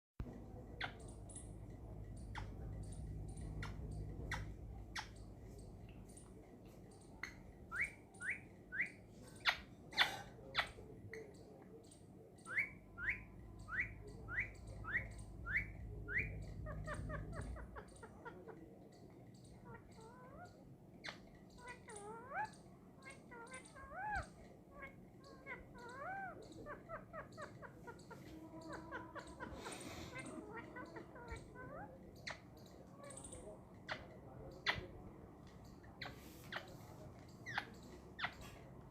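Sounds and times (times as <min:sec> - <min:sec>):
parrot chirping: 0:00.2 - 0:38.9.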